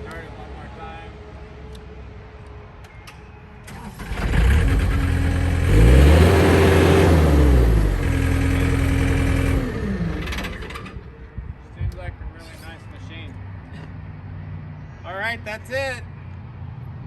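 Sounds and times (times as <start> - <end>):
diesel engine revving: 3.7 - 11.1.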